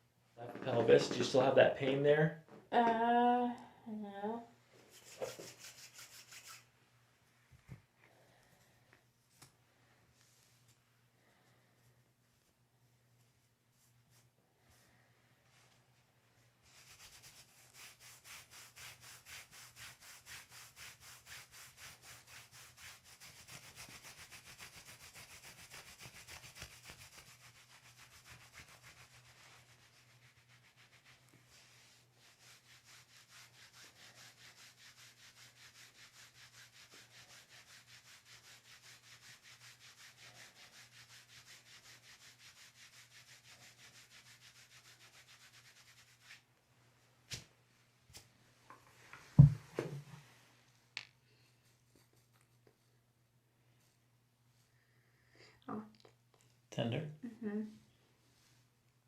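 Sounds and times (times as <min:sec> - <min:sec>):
hands rubbing over body: 0:04.9 - 0:06.7, 0:16.6 - 0:46.4.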